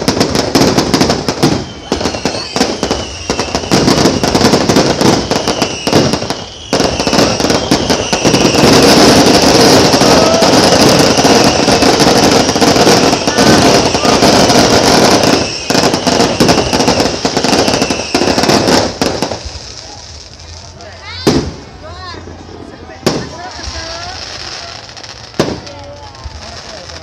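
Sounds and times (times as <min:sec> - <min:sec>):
fireworks bangs and crackles: 0:00.0 - 0:27.0
fireworks whistling: 0:00.0 - 0:27.0.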